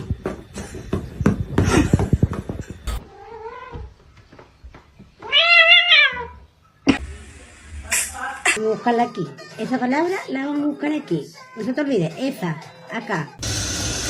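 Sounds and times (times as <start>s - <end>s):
cat meowing: 3.0s - 3.9s, 5.2s - 6.4s.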